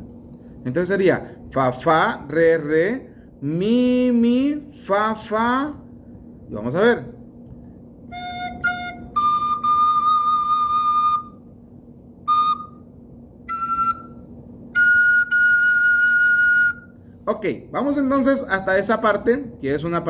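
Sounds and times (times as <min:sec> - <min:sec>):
soprano recorder playing: 0:08.1 - 0:11.4, 0:12.2 - 0:12.9, 0:13.5 - 0:16.9.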